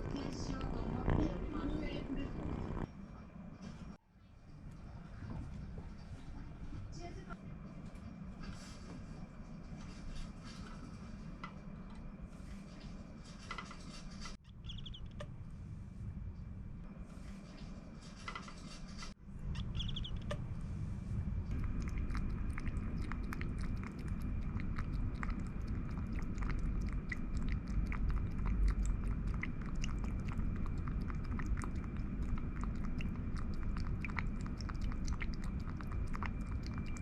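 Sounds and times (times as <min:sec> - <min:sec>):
low steady rumble: 0:00.0 - 0:12.9, 0:14.5 - 0:18.1, 0:19.1 - 0:37.0
kitten chewing crunchily: 0:21.5 - 0:37.0.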